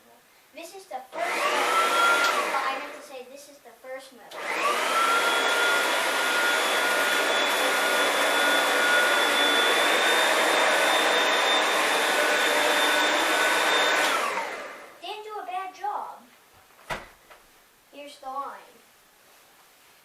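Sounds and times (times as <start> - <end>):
vacuum cleaner running: 1.1 - 3.0, 4.3 - 15.0
vacuum cleaner winding down: 1.2 - 3.0, 4.3 - 15.0.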